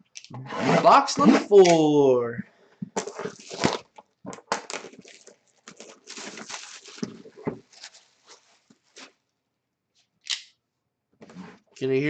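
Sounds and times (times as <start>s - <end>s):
packaging rustling and crinkling: 2.9s - 9.2s.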